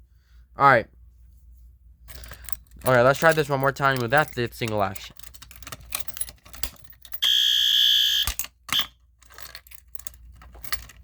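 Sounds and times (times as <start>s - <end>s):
alarm pull station clacking: 2.9s - 8.9s
fire alarm horn tone: 7.2s - 8.3s.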